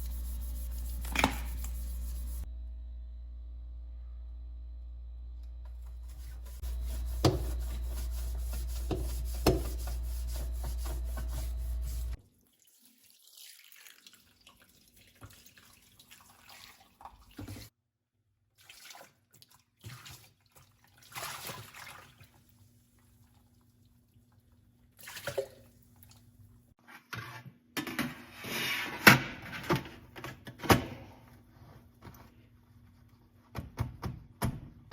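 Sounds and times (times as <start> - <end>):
water dripping and splashing: 12.4 - 17.7.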